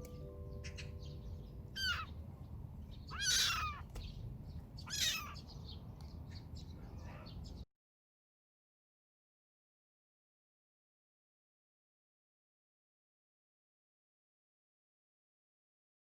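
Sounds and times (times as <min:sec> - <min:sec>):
kitten meowing: 0:01.8 - 0:02.1, 0:03.1 - 0:03.9, 0:04.9 - 0:05.4.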